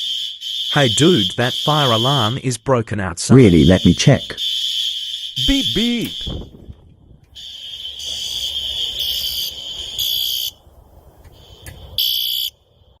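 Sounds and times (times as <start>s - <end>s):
high-pitched fire alarm tone: 0.0s - 2.4s, 3.4s - 6.7s, 7.3s - 10.6s, 11.4s - 12.6s.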